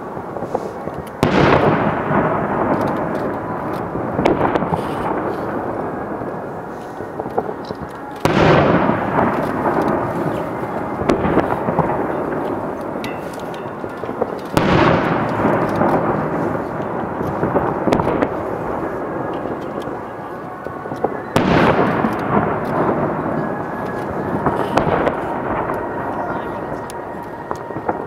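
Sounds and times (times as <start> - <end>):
fireworks crackling: 0.0 - 28.0
fireworks shells bursting: 0.0 - 28.0.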